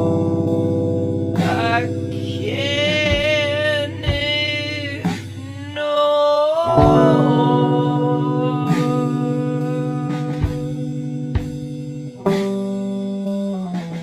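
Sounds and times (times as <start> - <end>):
sustained guitar chords: 0.0 - 5.7, 6.6 - 14.0
sped-up singing voice: 1.4 - 11.4.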